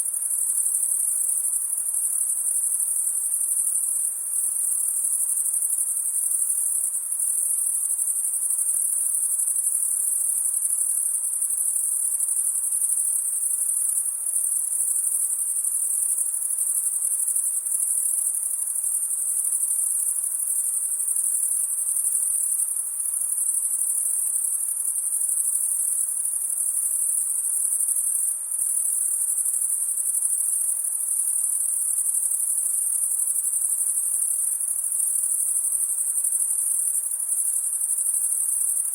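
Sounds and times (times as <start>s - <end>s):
crickets chirring: 0.0s - 38.9s.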